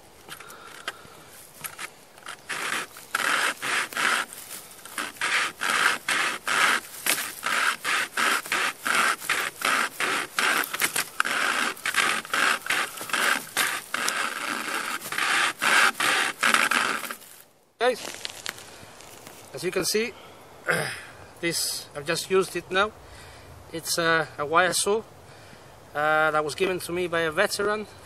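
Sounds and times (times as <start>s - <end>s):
wire saw rasping through wood: 1.6s - 17.3s.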